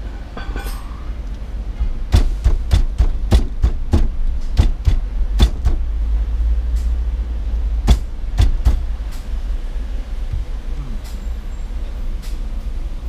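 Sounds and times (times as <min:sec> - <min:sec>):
steady low rumble: 0:00.0 - 0:13.0
sharp knocks and clicks: 0:01.8 - 0:05.9, 0:07.8 - 0:09.3.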